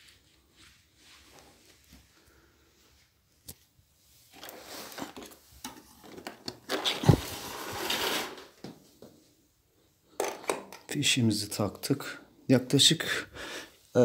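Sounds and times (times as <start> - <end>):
rustling handling noises: 0.0 - 9.3.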